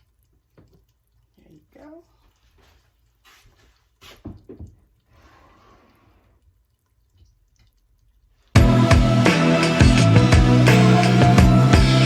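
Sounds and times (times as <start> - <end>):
faint knocks and clatter: 0.3 - 1.0, 2.3 - 5.0
loud background music: 8.6 - 12.0.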